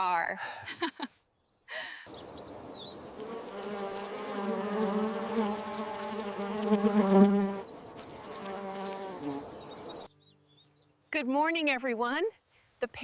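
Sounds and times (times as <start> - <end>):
flying insect buzzing: 2.2 - 10.1.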